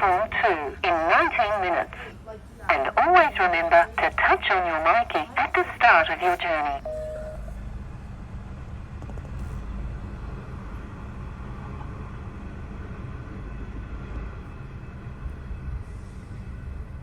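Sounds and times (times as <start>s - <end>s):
faint steady tones: 0.0s - 7.8s
train rumbling: 0.0s - 17.0s.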